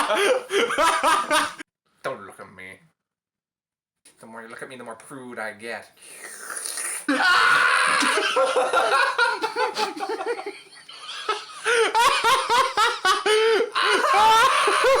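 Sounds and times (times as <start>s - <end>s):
hearty laughter: 0.0s - 1.6s, 8.0s - 15.0s.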